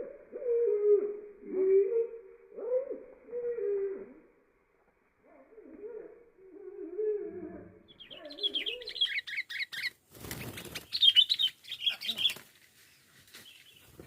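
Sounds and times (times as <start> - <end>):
bird chirping rapidly: 7.9 - 12.4
wing-flapping and rustling: 9.8 - 14.0.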